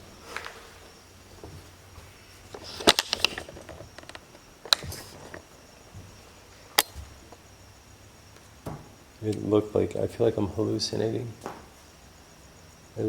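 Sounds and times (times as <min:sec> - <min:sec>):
sharp clicks and knocks: 0:02.5 - 0:06.1.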